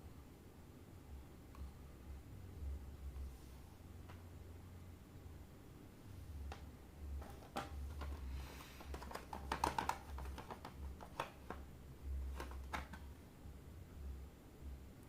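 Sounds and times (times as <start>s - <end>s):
low steady hum: 0.0s - 15.0s
plastic packaging clicks and taps: 6.4s - 11.7s, 12.3s - 13.1s
packaging crinkling rustle: 7.2s - 11.6s.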